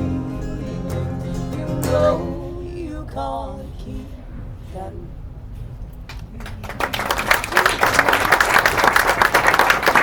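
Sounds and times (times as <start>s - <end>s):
audience applause: 6.4s - 10.0s.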